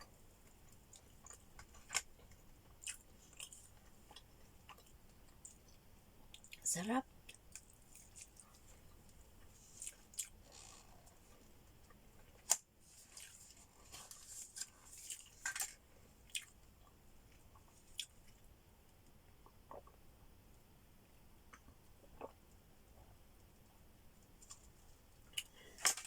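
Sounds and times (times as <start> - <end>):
person chewing crunchy food: 0.4 - 5.8, 7.3 - 18.4
wet mouth sounds: 9.8 - 11.2, 19.4 - 20.0.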